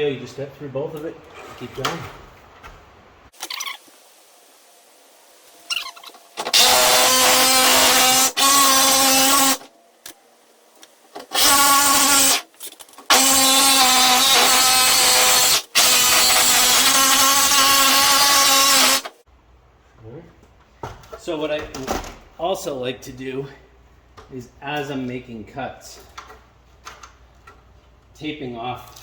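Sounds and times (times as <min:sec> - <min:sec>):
jigsaw cutting sheet metal: 0:06.4 - 0:09.7, 0:11.2 - 0:12.5, 0:13.1 - 0:19.2.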